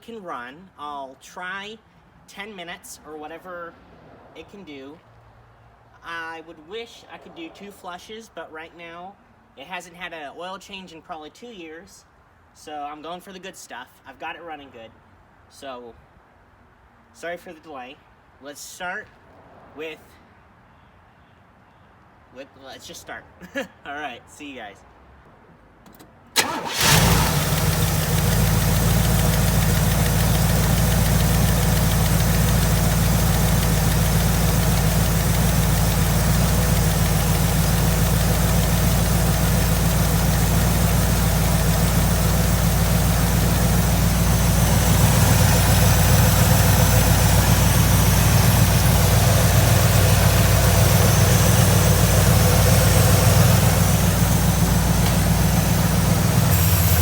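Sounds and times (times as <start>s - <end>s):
car engine starting and idling: 26.4s - 57.0s.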